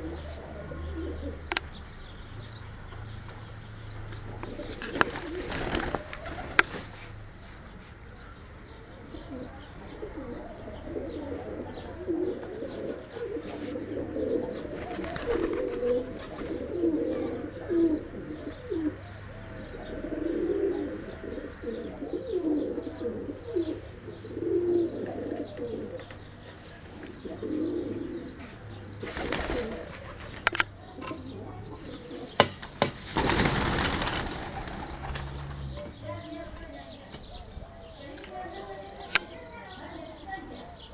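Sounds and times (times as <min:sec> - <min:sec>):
pigeons cooing: 0:00.0 - 0:02.2, 0:03.2 - 0:07.0, 0:09.0 - 0:40.9
rustling bursts: 0:04.7 - 0:08.0, 0:32.5 - 0:35.8.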